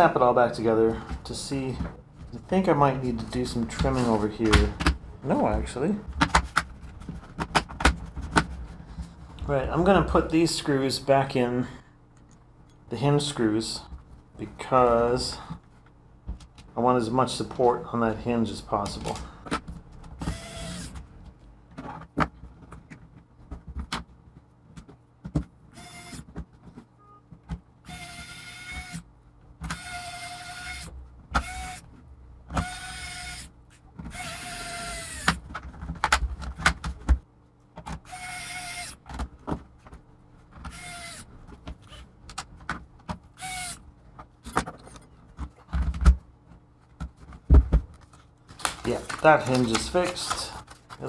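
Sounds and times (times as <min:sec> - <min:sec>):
electric screwdriver whirring: 0:20.2 - 0:21.0, 0:25.8 - 0:26.2, 0:27.9 - 0:29.0, 0:29.7 - 0:31.8, 0:32.6 - 0:33.5, 0:34.1 - 0:35.4, 0:38.0 - 0:39.0, 0:40.7 - 0:41.3, 0:43.4 - 0:43.8.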